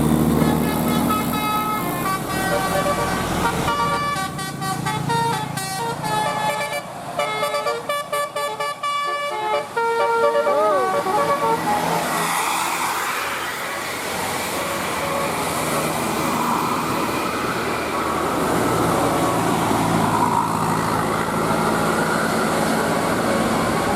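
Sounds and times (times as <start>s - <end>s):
bus engine running: 0.0s - 23.9s
tyre noise on road: 0.0s - 23.9s
musical bus horn: 0.3s - 12.2s.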